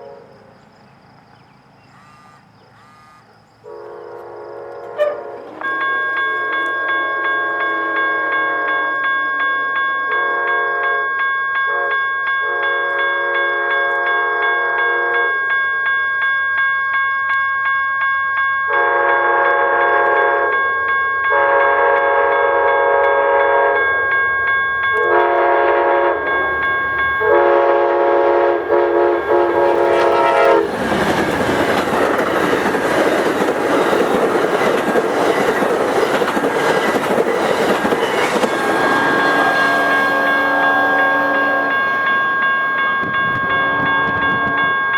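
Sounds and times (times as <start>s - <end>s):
train air horn blasts: 0.0s - 0.5s, 1.9s - 9.5s, 10.1s - 11.1s, 11.7s - 15.4s, 18.7s - 20.6s, 21.3s - 23.9s, 25.0s - 26.6s, 27.2s - 30.8s, 38.2s - 42.0s
crossing warning bell ringing: 0.0s - 44.9s
train wheel and rail noise: 0.0s - 44.9s.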